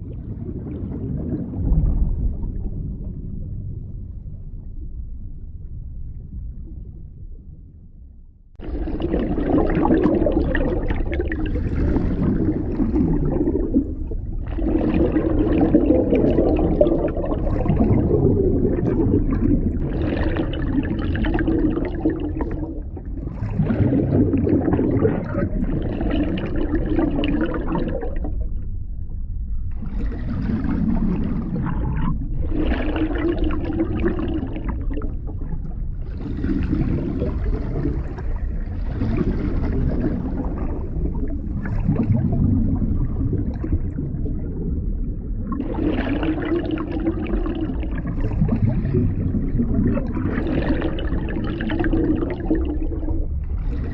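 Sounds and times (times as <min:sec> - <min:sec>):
muffled underwater bubbling: 0:00.0 - 0:04.5, 0:08.6 - 0:29.0, 0:29.6 - 0:53.9.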